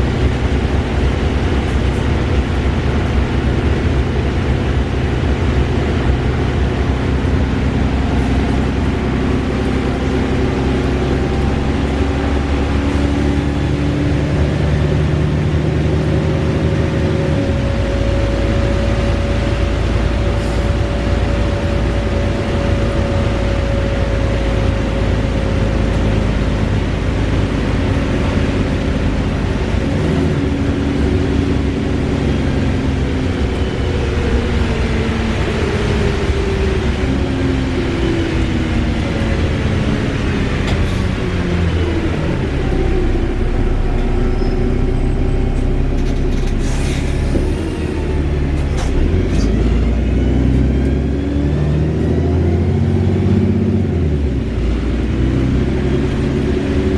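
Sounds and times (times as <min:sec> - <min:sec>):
bus drivetrain whirring and rumbling: 0:00.0 - 0:56.9.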